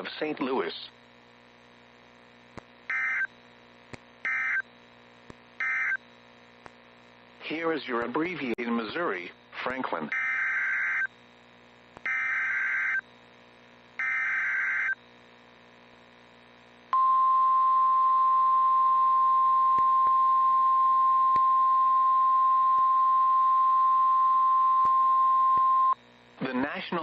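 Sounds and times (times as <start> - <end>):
steady alarm tone: 12.1 - 13.0, 14.0 - 15.0.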